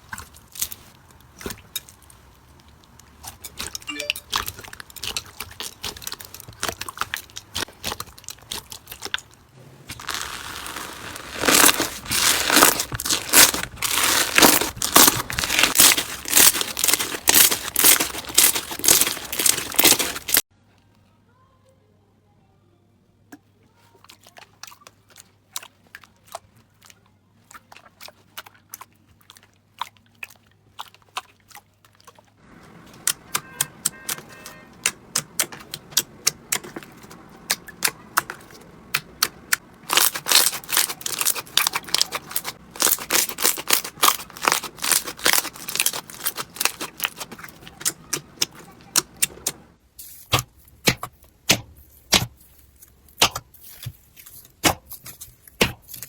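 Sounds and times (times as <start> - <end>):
slime crackling and popping: 0.0 - 20.4, 32.6 - 49.7.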